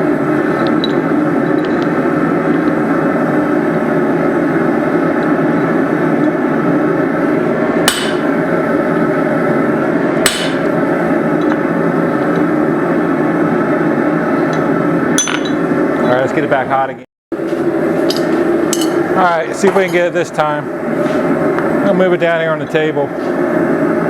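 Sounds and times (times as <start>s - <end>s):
hammer blows on hot steel: 7.8s - 8.4s, 10.2s - 10.8s.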